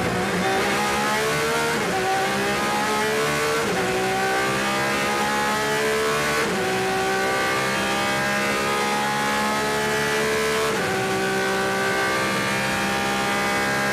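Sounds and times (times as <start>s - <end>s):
racing engine at full throttle: 0.0s - 13.9s.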